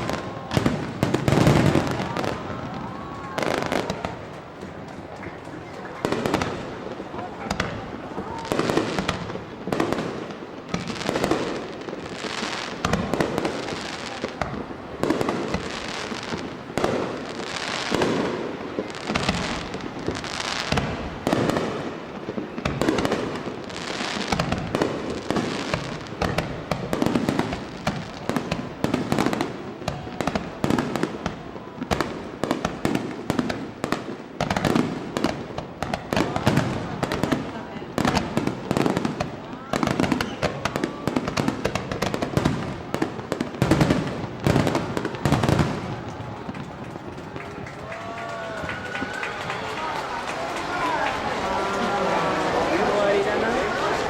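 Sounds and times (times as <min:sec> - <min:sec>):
fireworks bursting: 0:00.0 - 0:54.0.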